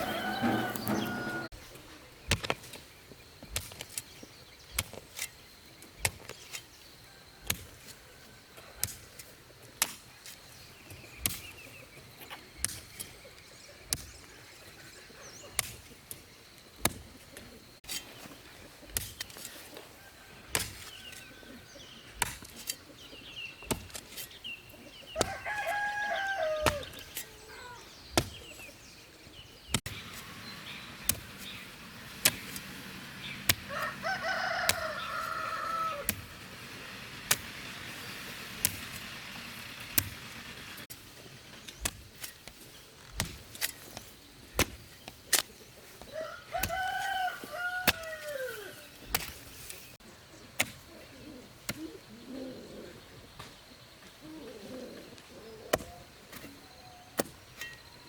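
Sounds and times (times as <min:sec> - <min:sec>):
chicken calls: 0:00.0 - 0:01.5, 0:24.7 - 0:27.9, 0:29.9 - 0:40.9, 0:45.9 - 0:49.0
rooster crowing: 0:00.0 - 0:01.5, 0:25.2 - 0:26.9, 0:33.2 - 0:36.3, 0:46.1 - 0:48.8
sharp knocks: 0:00.0 - 0:01.5.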